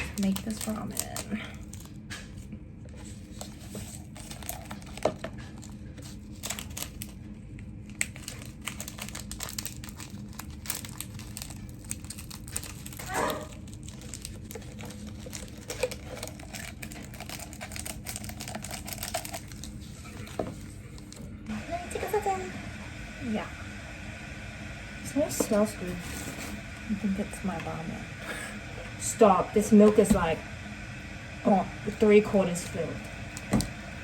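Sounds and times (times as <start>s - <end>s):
plastic wrapping crinkling and tearing: 0.0s - 21.5s.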